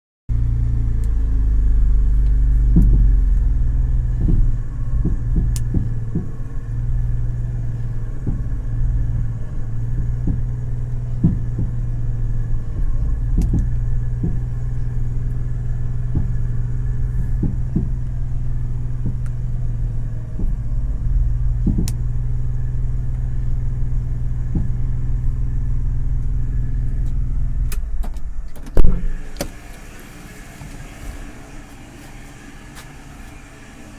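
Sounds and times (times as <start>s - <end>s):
truck engine running: 0.3s - 33.9s
steering knocks and clicks: 0.8s - 33.9s.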